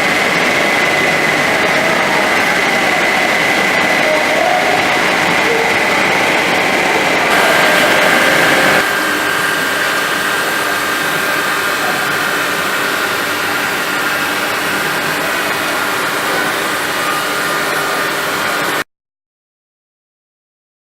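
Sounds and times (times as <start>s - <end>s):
cnc spindle whine: 0.0s - 18.8s
grinding of cutting: 0.0s - 18.8s.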